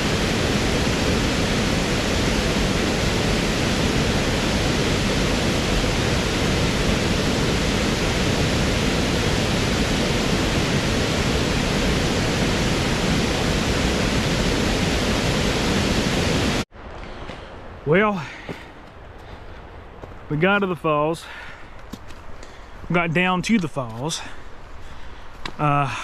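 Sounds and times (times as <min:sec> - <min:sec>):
waterfall rushing: 0:00.0 - 0:16.7.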